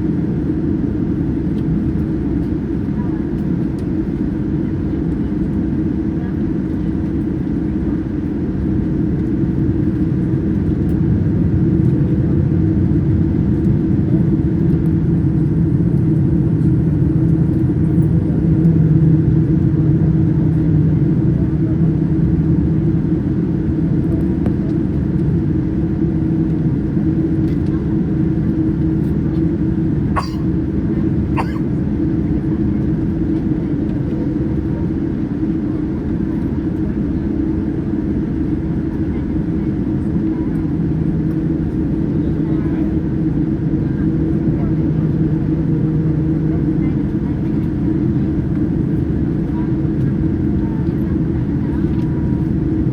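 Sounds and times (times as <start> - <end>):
airliner cabin engine rumble: 0.0 - 52.9.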